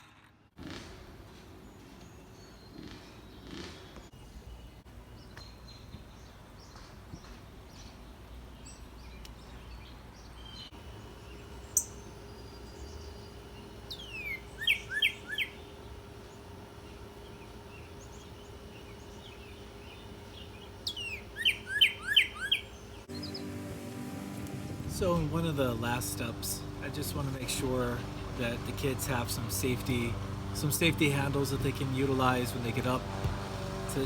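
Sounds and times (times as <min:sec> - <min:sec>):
songbird singing: 0:01.6 - 0:34.0
sharp bird chirp: 0:10.4 - 0:15.8, 0:16.8 - 0:23.4.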